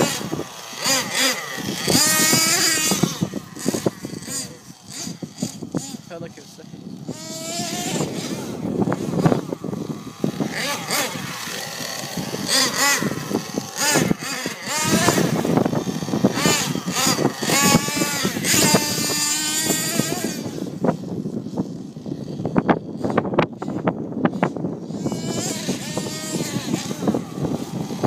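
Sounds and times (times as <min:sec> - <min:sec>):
model truck engine revving: 0:00.0 - 0:28.0.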